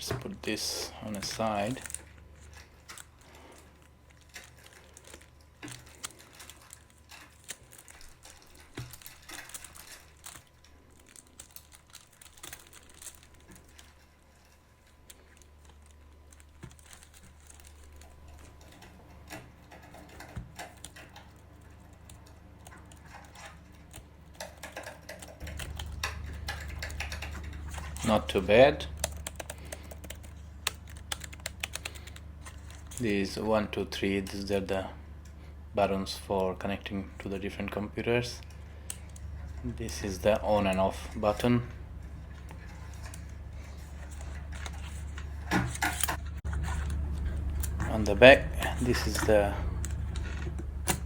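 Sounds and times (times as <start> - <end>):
low steady hum: 0.0 - 51.0
keyboard typing clicks: 29.0 - 32.2.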